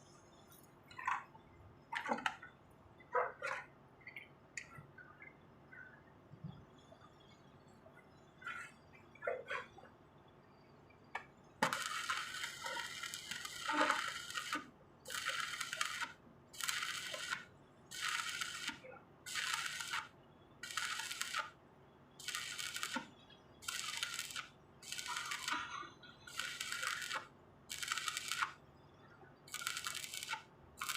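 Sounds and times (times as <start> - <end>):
welding arc crackling: 11.6 - 21.6, 22.2 - 28.6, 29.5 - 30.9.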